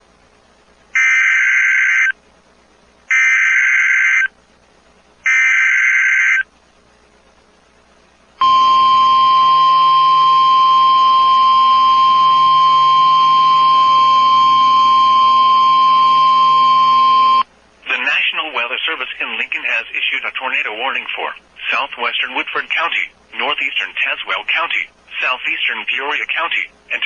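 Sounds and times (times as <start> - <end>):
screeching digital header tones: 1.0 - 2.2, 3.1 - 4.3, 5.3 - 6.4, 8.4 - 17.4
steady single-pitch attention tone: 8.4 - 17.5.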